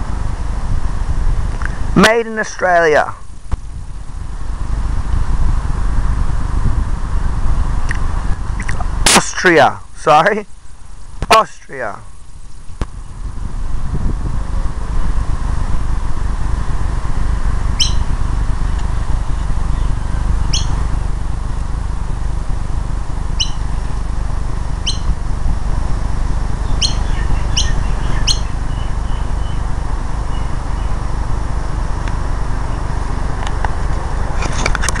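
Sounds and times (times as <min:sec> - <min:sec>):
high bird chirps: 0:17.8 - 0:18.1, 0:19.7 - 0:20.8, 0:23.4 - 0:23.6, 0:24.8 - 0:25.1, 0:26.6 - 0:29.6.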